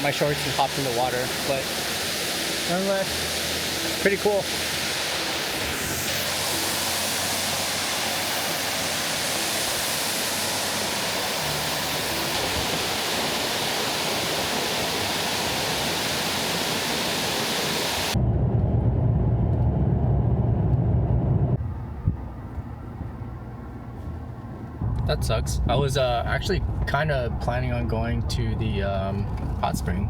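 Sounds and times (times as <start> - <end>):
waterfall roar: 0.0 - 18.2
low vehicle rumble: 18.1 - 30.0.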